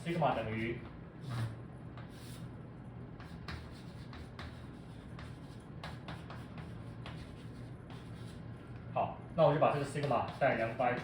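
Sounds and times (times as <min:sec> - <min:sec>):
handwriting strokes: 0:03.2 - 0:08.5.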